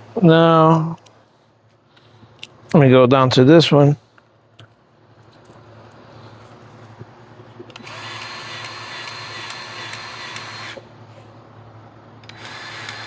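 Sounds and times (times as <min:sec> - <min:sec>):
grease gun motor whirring: 0:07.7 - 0:10.9, 0:12.2 - 0:13.0.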